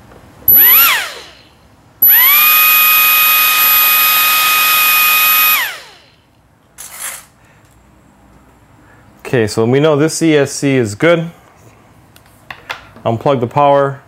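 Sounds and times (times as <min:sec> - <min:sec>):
electric fan high whine: 0:00.0 - 0:14.0.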